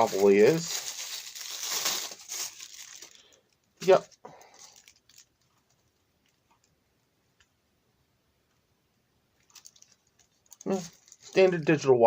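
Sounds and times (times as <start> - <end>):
faint clicks of plastic items: 2.4 - 6.8, 9.4 - 11.8.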